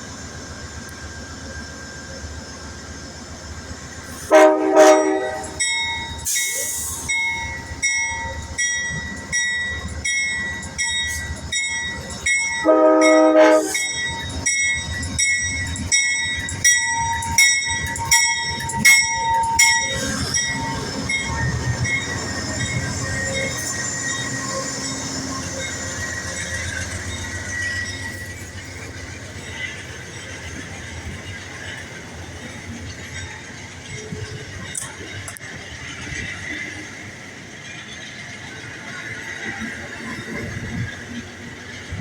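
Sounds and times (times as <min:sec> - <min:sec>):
train rumble: 0:00.0 - 0:42.0
locomotive horn blasts: 0:04.2 - 0:05.6, 0:12.6 - 0:13.9.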